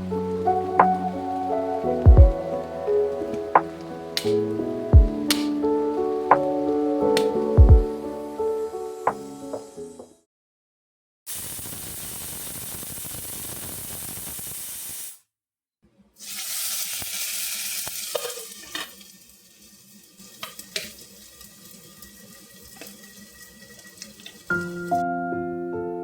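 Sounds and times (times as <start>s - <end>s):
food sizzling in a pan: 11.3s - 15.2s, 16.2s - 25.0s.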